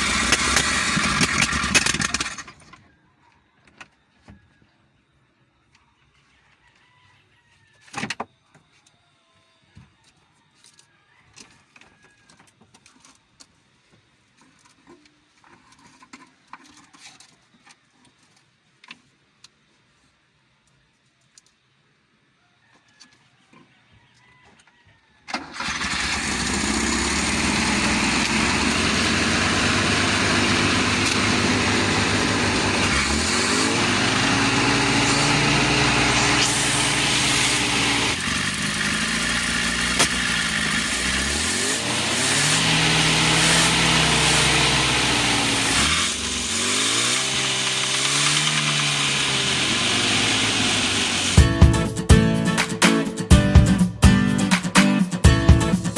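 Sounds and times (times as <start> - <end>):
car engine starting and revving: 0.0 - 2.6, 25.4 - 51.6
engine pop: 39.9 - 40.4.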